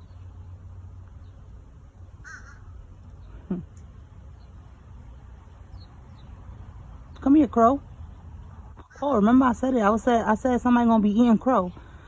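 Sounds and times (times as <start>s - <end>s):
crows cawing: 2.2s - 2.8s.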